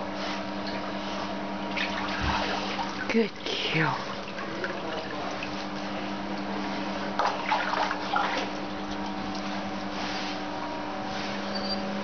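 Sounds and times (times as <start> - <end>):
water splashing in a pool: 0.6 - 10.3.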